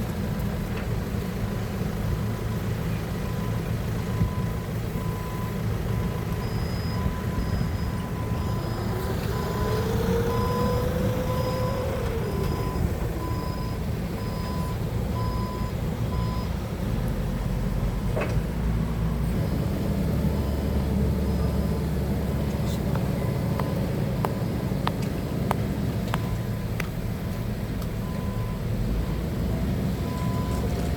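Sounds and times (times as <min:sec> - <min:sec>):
forklift engine running: 0:00.0 - 0:30.9
reversing alarm beeping: 0:03.2 - 0:16.6, 0:19.0 - 0:24.7, 0:28.0 - 0:29.3, 0:30.0 - 0:30.7
whine: 0:05.5 - 0:15.7.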